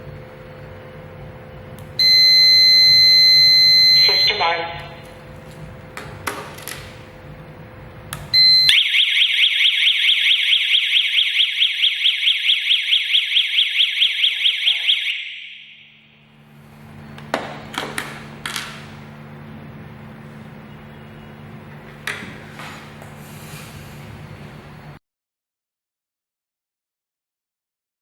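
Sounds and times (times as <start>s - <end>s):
short beep: 2.0s - 4.4s, 8.4s - 8.8s
warbling alarm siren: 2.0s - 5.0s, 8.3s - 17.2s.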